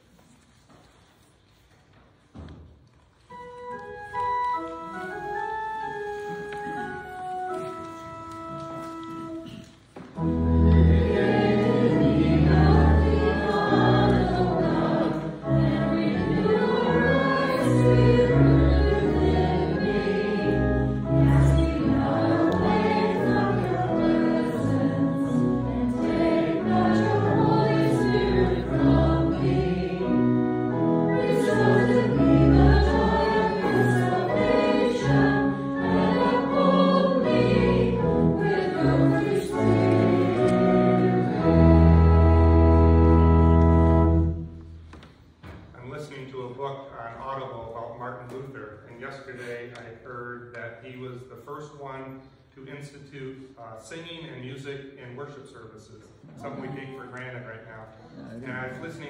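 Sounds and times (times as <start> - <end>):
organ chords: 3.3 - 9.4, 10.1 - 44.8
congregation singing a hymn: 4.2 - 44.6.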